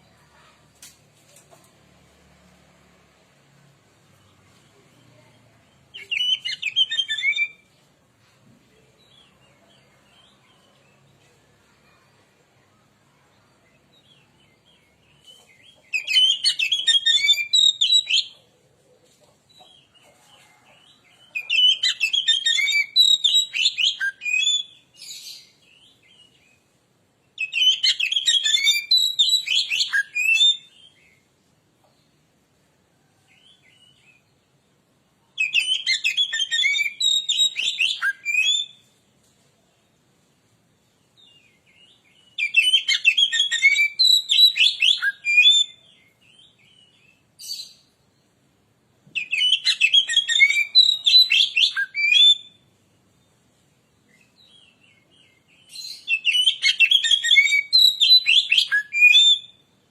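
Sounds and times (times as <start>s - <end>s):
bird singing rapid phrases: 4.1s - 7.7s, 13.7s - 18.4s, 21.4s - 31.3s, 35.4s - 38.9s, 41.2s - 48.3s, 49.2s - 59.8s.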